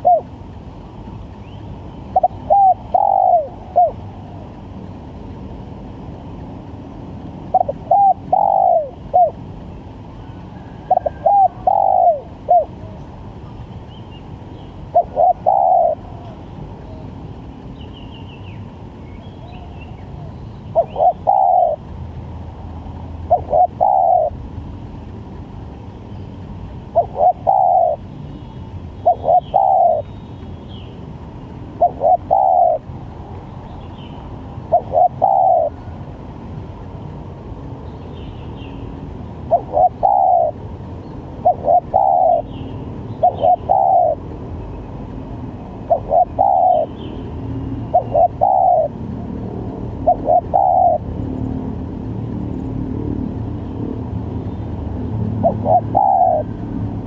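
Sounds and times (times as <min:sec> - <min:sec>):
dove cooing: 0:00.0 - 0:00.4, 0:02.1 - 0:04.5, 0:07.4 - 0:09.4, 0:10.3 - 0:13.1, 0:14.8 - 0:17.0, 0:19.4 - 0:21.8, 0:23.2 - 0:24.4, 0:26.9 - 0:28.1, 0:29.0 - 0:30.1, 0:31.7 - 0:32.9, 0:34.7 - 0:36.0, 0:39.5 - 0:40.6, 0:41.4 - 0:42.6, 0:43.2 - 0:44.2, 0:45.8 - 0:47.0, 0:47.9 - 0:49.0, 0:50.0 - 0:51.1, 0:55.4 - 0:56.6.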